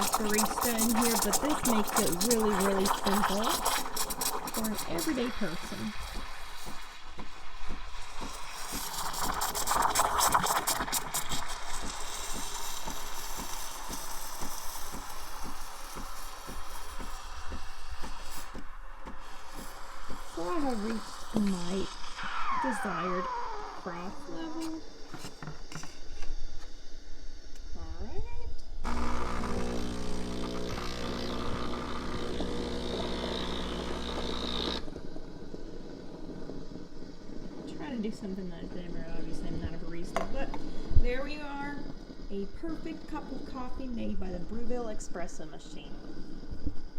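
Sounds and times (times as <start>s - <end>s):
espresso machine low pulsing: 0.0s - 26.0s, 28.8s - 46.9s
steam wand hissing: 0.0s - 46.9s.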